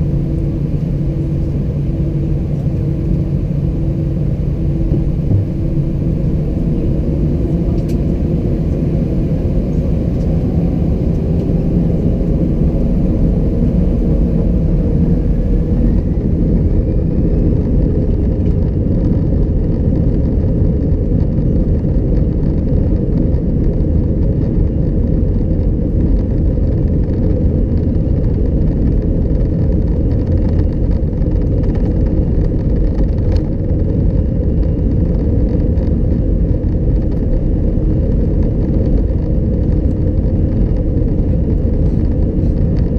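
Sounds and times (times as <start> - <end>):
faint rising whine: 0.0 - 19.6
jet engines rumbling in cabin: 0.0 - 42.9.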